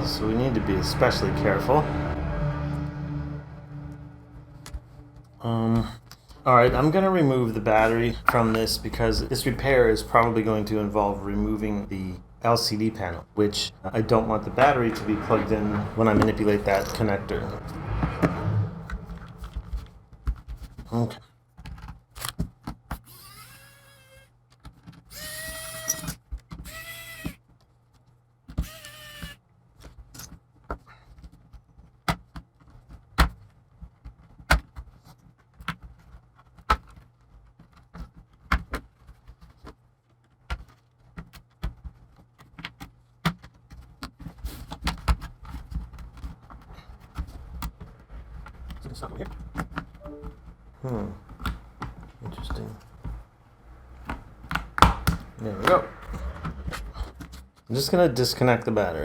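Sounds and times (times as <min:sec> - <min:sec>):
tools and screws clicking on plastic: 0:21.5 - 0:48.6
electric screwdriver whirring: 0:23.0 - 0:24.3, 0:25.1 - 0:27.4, 0:28.6 - 0:29.4.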